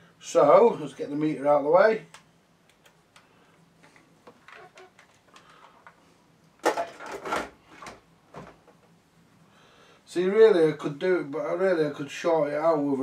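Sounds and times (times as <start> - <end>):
light clicks and rustling: 2.1 - 6.0.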